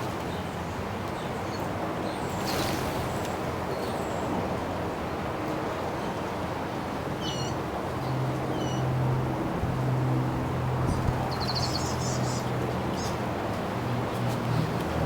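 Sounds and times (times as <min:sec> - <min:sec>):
wind over microphone: 0:10.8 - 0:11.6.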